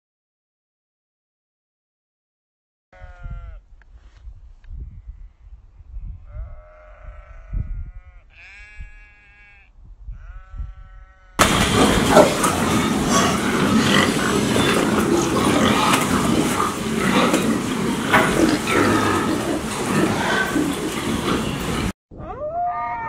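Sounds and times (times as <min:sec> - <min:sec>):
pigs grunting: 0:11.4 - 0:21.9.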